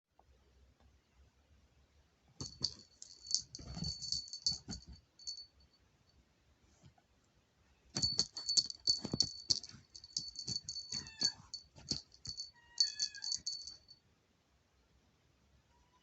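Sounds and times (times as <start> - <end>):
cat toy bell jingling: 2.4 - 5.5, 8.0 - 14.0.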